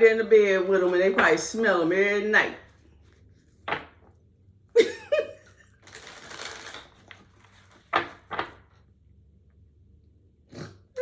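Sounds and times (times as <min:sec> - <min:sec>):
woman's breathy laugh: 0:04.8 - 0:05.7.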